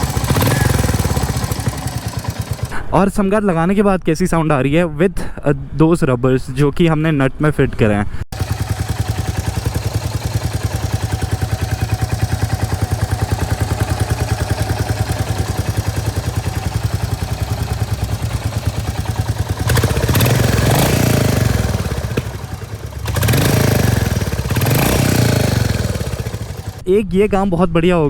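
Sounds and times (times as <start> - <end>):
motorcycle engine idling and revving: 0.0 - 2.8, 8.3 - 26.8.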